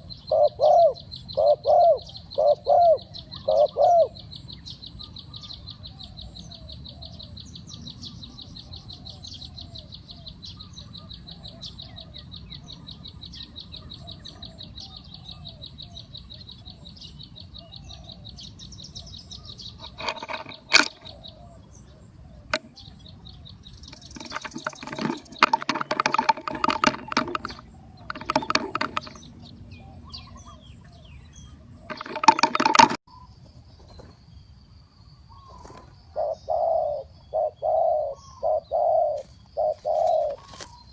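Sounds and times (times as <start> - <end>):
doves cooing: 0.0 - 7.5, 8.4 - 33.3, 35.3 - 40.9
high-pitched insect trill: 23.3 - 29.2.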